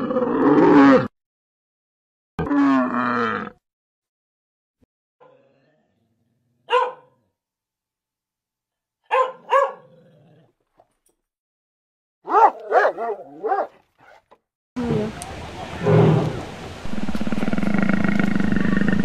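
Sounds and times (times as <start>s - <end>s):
dog barking: 6.7s - 7.2s, 9.0s - 9.9s, 12.2s - 14.2s.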